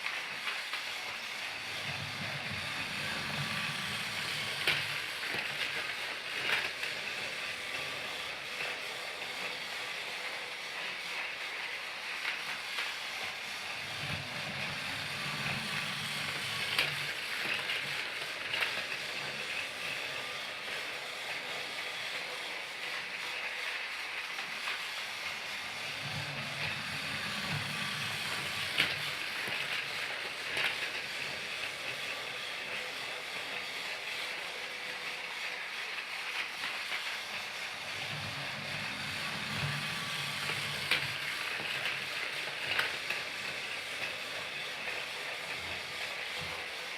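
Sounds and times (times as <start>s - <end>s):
toy train motor whir: 0.0s - 46.9s.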